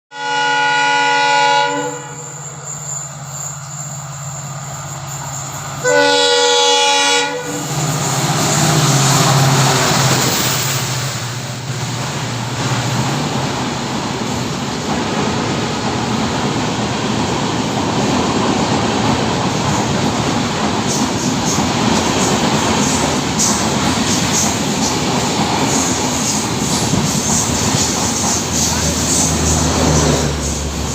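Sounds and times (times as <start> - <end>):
locomotive horn blast: 0.1 - 2.4, 5.8 - 7.8
train wheels clattering: 7.6 - 30.9.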